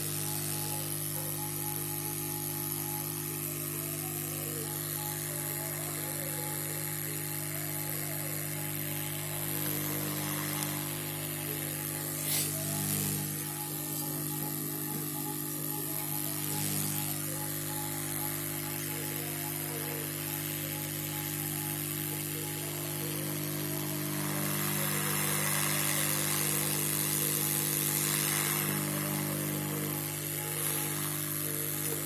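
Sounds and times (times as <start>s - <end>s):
hot air station blowing: 7.8s - 32.0s.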